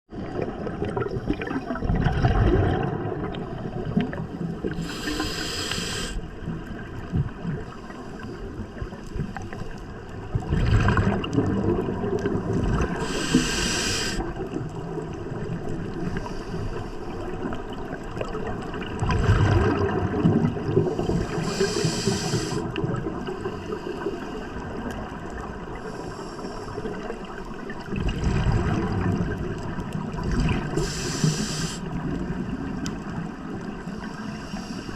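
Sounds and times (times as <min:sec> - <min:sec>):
bubbling on exhale: 0:00.4 - 0:06.2
regulator hissing on inhale: 0:04.6 - 0:06.3, 0:13.0 - 0:14.3, 0:16.0 - 0:17.2, 0:20.9 - 0:22.8, 0:30.7 - 0:32.0, 0:33.9 - 0:34.9.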